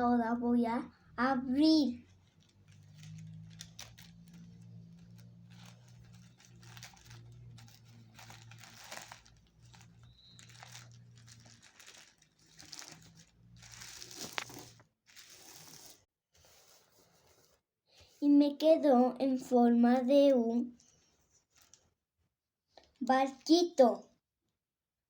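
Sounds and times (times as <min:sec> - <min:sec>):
tissue paper crinkling: 0:02.0 - 0:16.9, 0:20.8 - 0:21.8.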